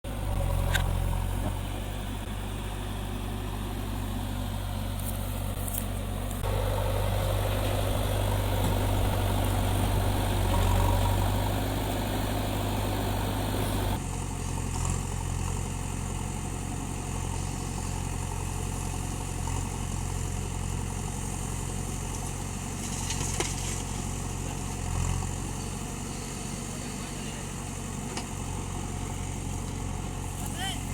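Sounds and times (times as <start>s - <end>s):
diesel engines droning: 0.0s - 30.9s.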